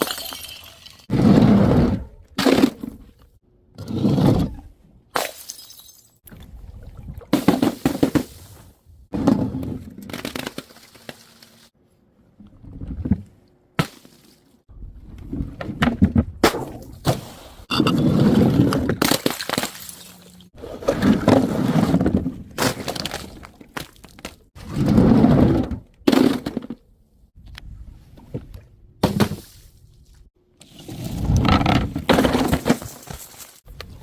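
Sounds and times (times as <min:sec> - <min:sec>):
glass bottles smashing: 0:00.0 - 0:01.0, 0:05.3 - 0:06.2.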